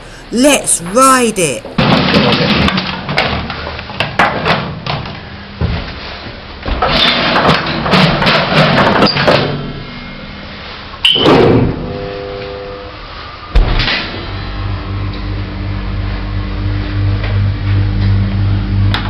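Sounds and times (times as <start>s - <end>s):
steady hum: 0.0s - 1.8s, 11.6s - 19.0s.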